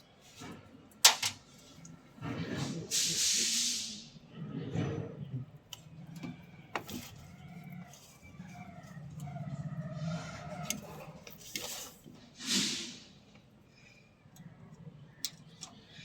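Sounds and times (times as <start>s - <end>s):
clatter and handling noises: 0.2s - 2.9s, 4.4s - 12.4s
hiss: 2.6s - 4.2s, 12.4s - 13.2s.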